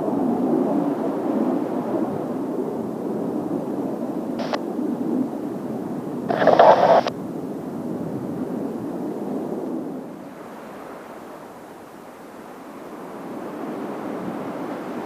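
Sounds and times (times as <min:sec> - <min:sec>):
distant jet engine hiss: 0:04.4 - 0:04.6, 0:06.3 - 0:07.1
short bursts of hiss: 0:06.3 - 0:07.1.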